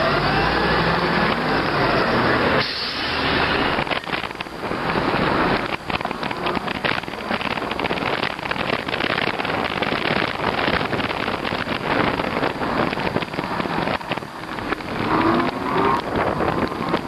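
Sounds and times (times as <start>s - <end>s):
tyres crackling on snow: 0.0s - 17.0s
wind buffeting microphone: 0.0s - 17.0s.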